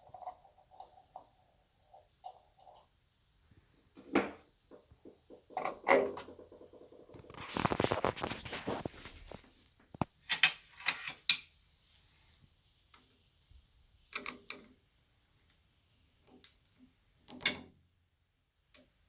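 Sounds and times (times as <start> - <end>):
hands scraping and rubbing: 5.0 - 10.1.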